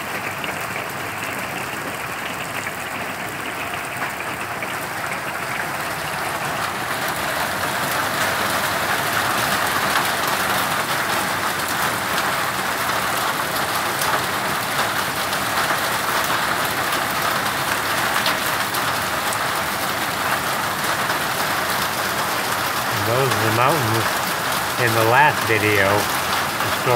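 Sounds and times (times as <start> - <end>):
rain and hail falling: 0.0 - 26.9.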